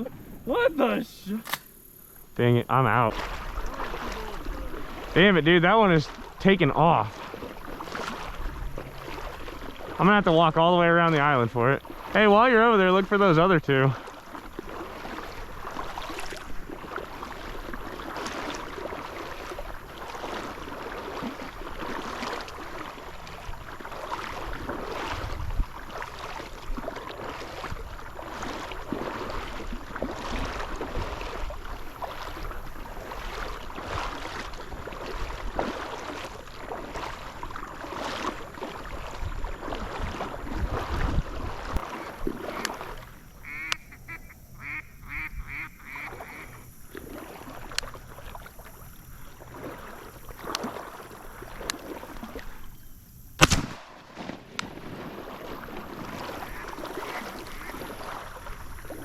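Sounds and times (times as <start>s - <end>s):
wading through marsh water: 0.0s - 59.0s
wind on microphone: 7.6s - 10.0s, 23.3s - 28.2s, 38.8s - 42.8s.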